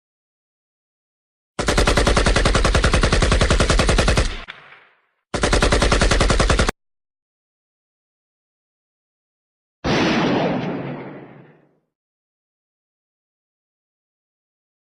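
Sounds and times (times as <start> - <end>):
automatic gunfire bursts: 1.6 - 4.8, 5.4 - 6.7.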